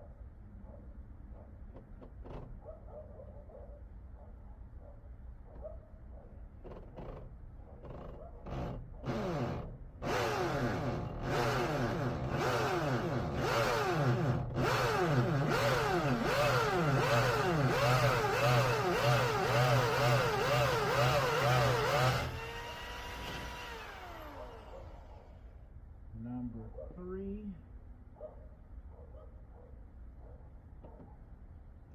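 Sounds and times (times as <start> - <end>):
hammer drill boring into concrete: 8.5 - 25.3.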